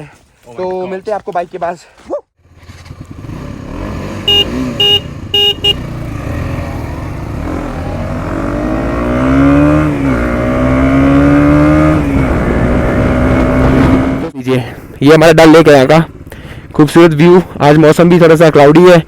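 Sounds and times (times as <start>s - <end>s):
motorcycle engine revving: 2.4s - 14.4s
short horn beeps: 4.2s - 5.8s.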